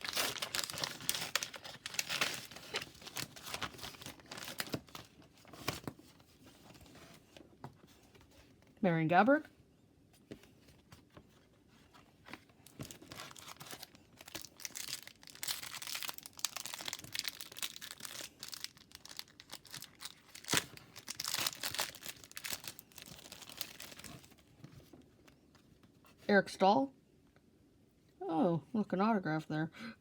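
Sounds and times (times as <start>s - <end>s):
wrapper tearing and crinkling: 0.0s - 5.9s, 12.6s - 24.4s.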